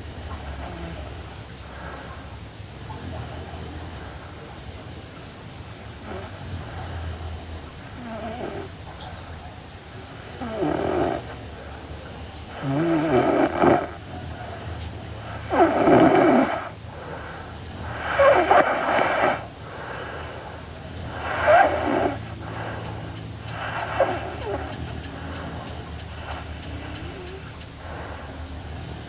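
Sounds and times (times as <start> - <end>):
girl snoring: 6.0 - 6.7, 7.9 - 8.7, 10.3 - 11.3, 12.5 - 14.0, 15.2 - 29.0.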